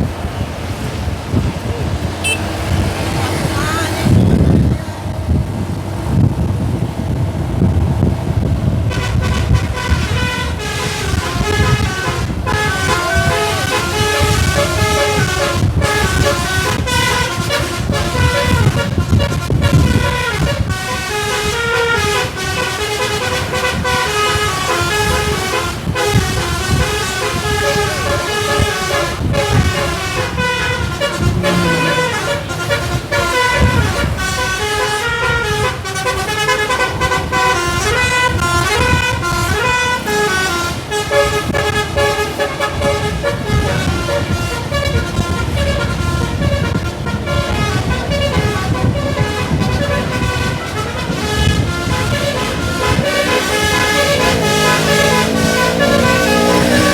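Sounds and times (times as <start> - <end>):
musical air horn playing a tune: 2.2 - 2.8, 8.9 - 56.9
low rumble: 30.9 - 34.2.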